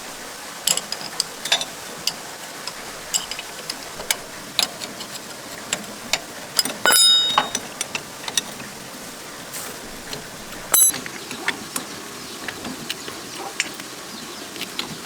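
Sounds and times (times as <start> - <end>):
hand tools tapping on metal: 0.5 - 15.0
ringing metallic clank: 6.6 - 7.9, 10.7 - 11.0.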